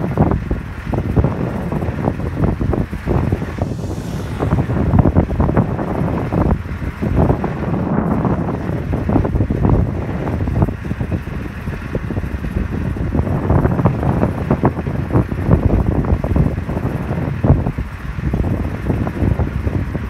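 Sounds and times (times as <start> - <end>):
wind buffeting microphone: 0.0 - 20.0
heavy machinery running: 1.0 - 9.8.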